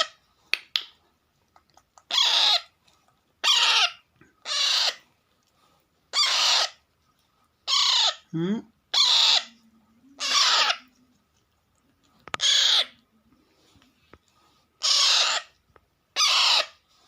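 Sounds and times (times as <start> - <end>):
parakeet chicks harsh calls: 2.1 - 2.7, 3.4 - 5.0, 6.1 - 6.8, 7.6 - 8.3, 8.9 - 9.6, 10.2 - 10.9, 12.4 - 13.0, 14.8 - 16.8.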